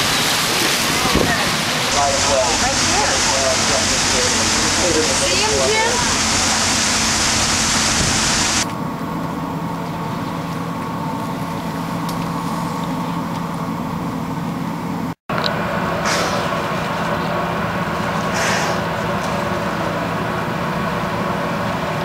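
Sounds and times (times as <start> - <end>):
water rushing: 0.0 - 8.7
boat engine humming: 0.0 - 22.0
wind: 0.0 - 22.0.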